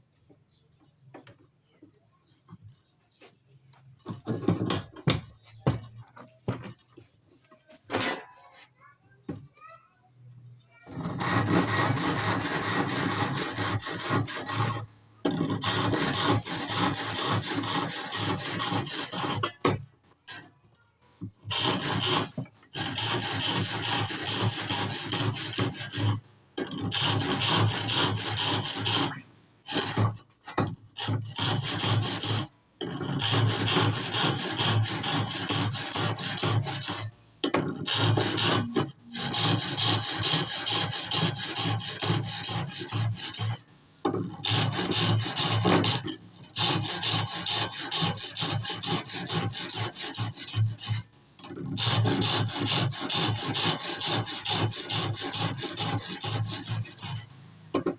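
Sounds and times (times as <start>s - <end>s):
wood being sawn: 10.8s - 20.5s, 21.4s - 57.9s.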